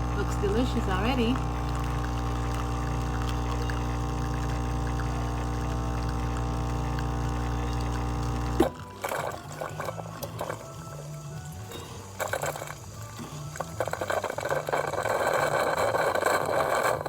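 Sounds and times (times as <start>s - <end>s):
espresso machine pump humming: 0.0s - 17.0s.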